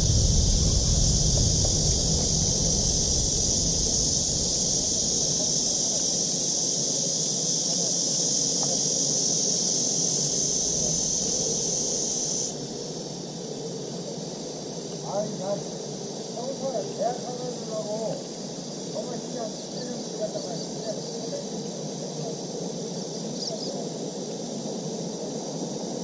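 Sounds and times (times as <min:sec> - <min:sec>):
wind rumbling on microphone: 0:00.0 - 0:06.7, 0:10.5 - 0:12.8
insect chorus buzzing: 0:00.0 - 0:26.0.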